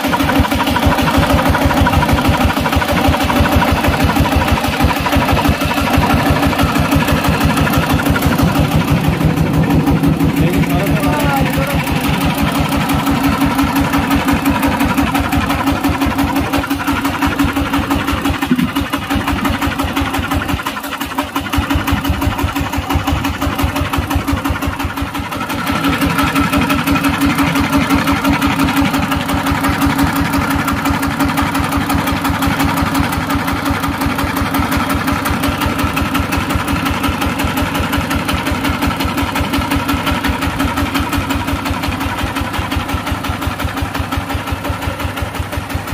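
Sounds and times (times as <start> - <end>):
diesel engine running: 0.0 - 45.9.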